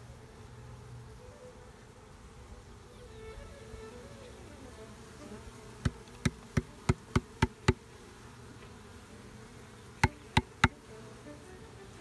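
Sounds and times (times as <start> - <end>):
honey bees buzzing: 4.4 - 12.0
sharp knocks: 5.9 - 7.8, 10.0 - 10.8.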